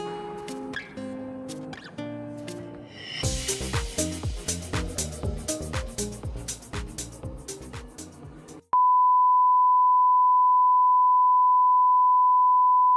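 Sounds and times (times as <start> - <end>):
background music with beat: 0.0 - 8.7.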